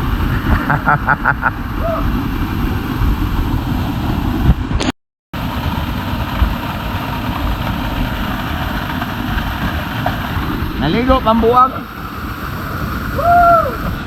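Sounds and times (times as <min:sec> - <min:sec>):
waterfall roaring: 0:00.0 - 0:14.0.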